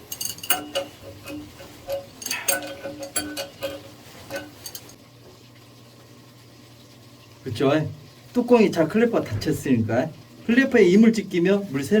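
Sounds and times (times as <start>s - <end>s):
metallic clicks and clinks: 0.0s - 5.0s.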